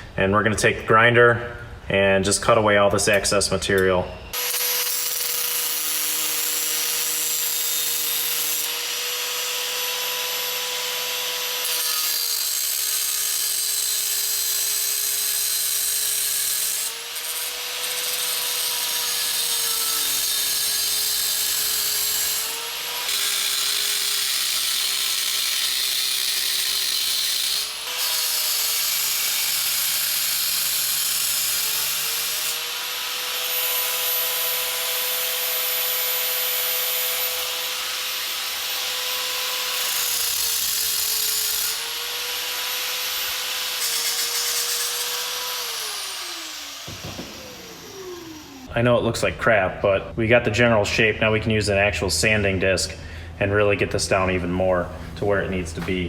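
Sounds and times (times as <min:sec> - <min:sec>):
electric grinder cutting metal: 0:04.3 - 0:48.7.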